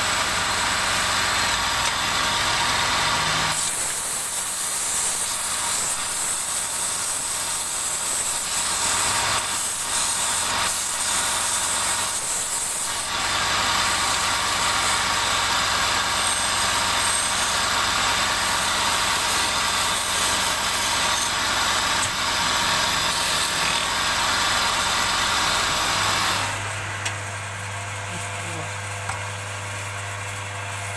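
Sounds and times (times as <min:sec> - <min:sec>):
lathe motor hum: 0:00.0 - 0:04.2, 0:13.1 - 0:30.9
turning tool cutting wood: 0:00.0 - 0:27.2.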